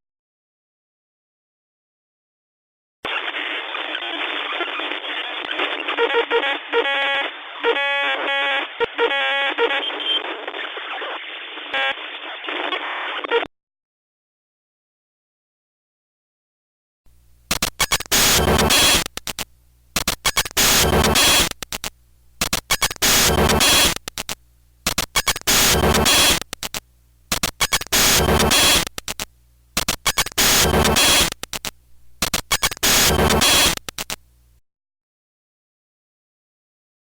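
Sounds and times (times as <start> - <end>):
digital glitch bursts: 3.1 - 13.1, 17.6 - 19.1, 20.2 - 21.6, 22.4 - 24.0, 24.9 - 26.4, 27.6 - 28.9, 29.8 - 31.4, 32.2 - 33.8.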